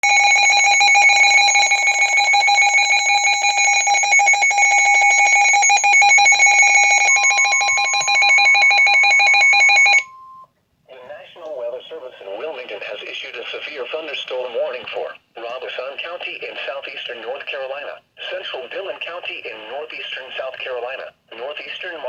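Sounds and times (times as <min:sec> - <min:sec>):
rapidly pulsing electronic alarm: 0:00.0 - 0:10.4
steady warning tone: 0:00.0 - 0:10.5.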